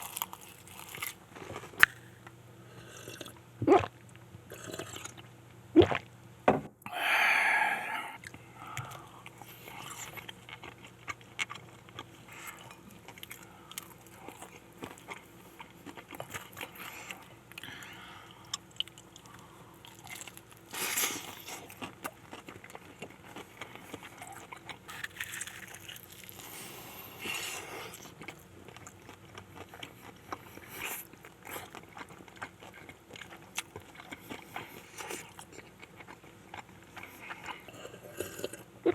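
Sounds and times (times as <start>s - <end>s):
crunchy bites and chewing: 0.0s - 2.3s, 8.2s - 38.9s.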